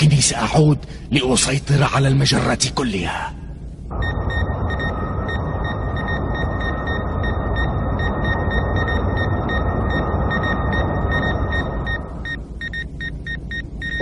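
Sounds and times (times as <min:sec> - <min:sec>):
high whine: 0:03.5 - 0:14.0
spaceship engine rumble: 0:03.8 - 0:12.6.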